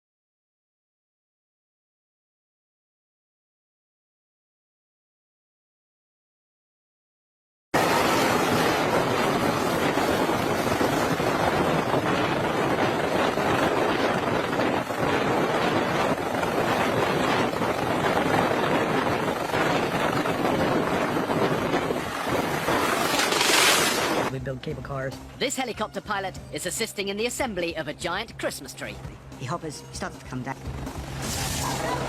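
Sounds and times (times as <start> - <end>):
loud rushing noise: 7.8 - 24.3, 30.8 - 32.0.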